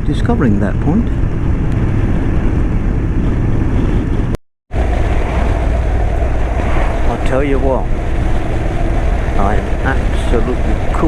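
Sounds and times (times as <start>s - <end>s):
wind rush: 0.0s - 11.0s.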